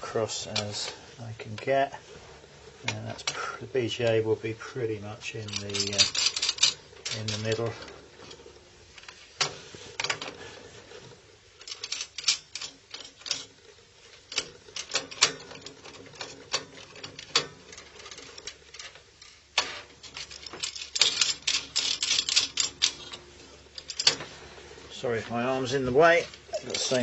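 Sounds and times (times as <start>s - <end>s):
clicking and rattling: 5.3s - 24.4s.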